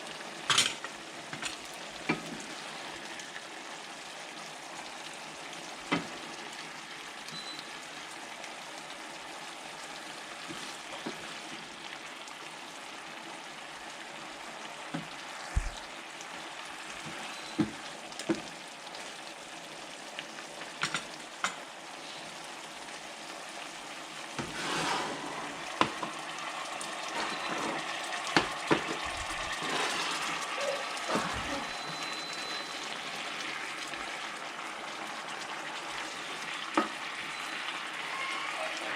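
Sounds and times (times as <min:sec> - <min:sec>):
food sizzling in a pan: 0:00.0 - 0:38.9.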